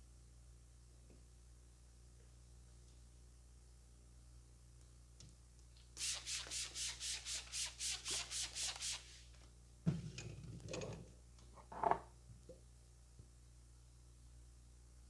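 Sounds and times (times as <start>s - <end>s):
hands rubbing briskly on head: 6.0s - 9.3s.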